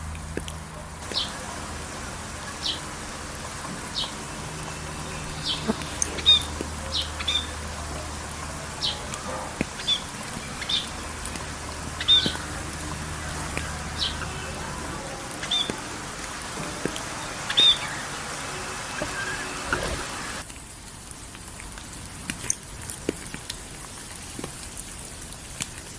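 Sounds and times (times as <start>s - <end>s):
steady background hiss: 0.0s - 25.6s
birds chirping: 0.8s - 20.4s.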